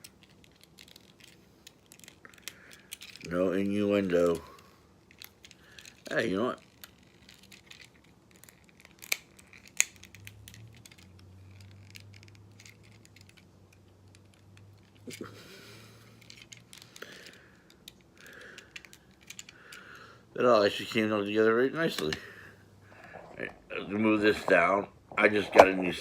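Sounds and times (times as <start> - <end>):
plastic clicks and rattles: 0.0 - 3.3, 4.2 - 15.2, 16.2 - 19.8
sharp plastic snaps: 5.1 - 15.0.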